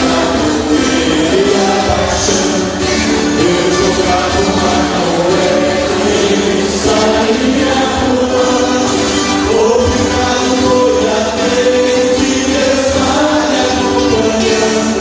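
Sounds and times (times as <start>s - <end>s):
instrumental backing music: 0.0s - 15.0s
choir singing long held notes: 3.4s - 13.9s.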